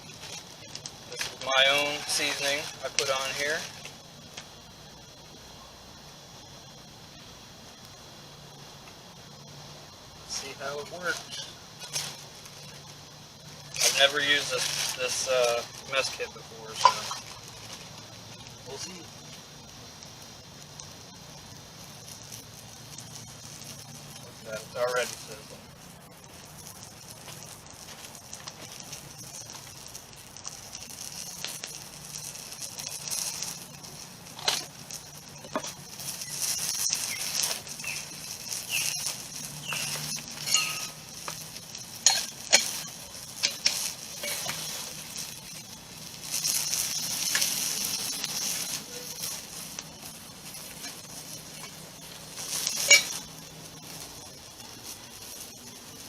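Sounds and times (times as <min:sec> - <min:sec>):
burger patty sizzling in a frying pan: 0:00.0 - 0:56.0
campfire pops and crackles: 0:00.0 - 0:56.0.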